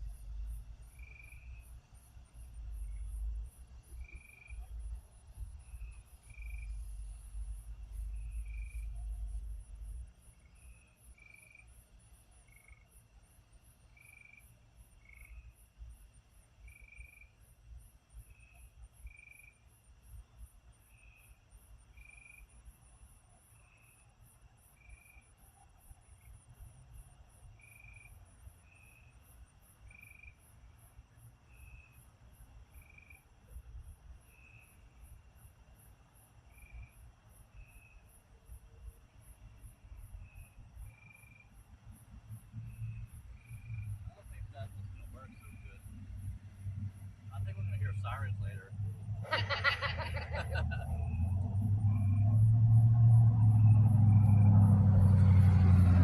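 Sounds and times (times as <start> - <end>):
low rumble: 0.0 - 10.1, 42.3 - 55.4
crickets chirping: 0.0 - 56.0.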